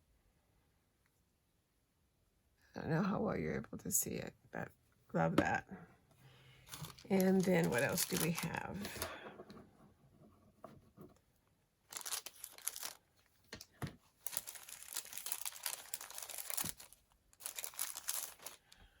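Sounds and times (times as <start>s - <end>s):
packaging crinkling and rustling: 6.6s - 9.1s, 11.9s - 19.0s.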